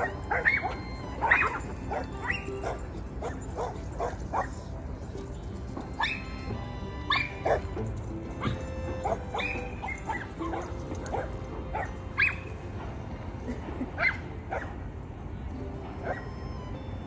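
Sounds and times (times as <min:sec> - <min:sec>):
dogs barking: 0:00.0 - 0:04.9, 0:05.9 - 0:06.3, 0:07.1 - 0:14.9, 0:16.0 - 0:16.3.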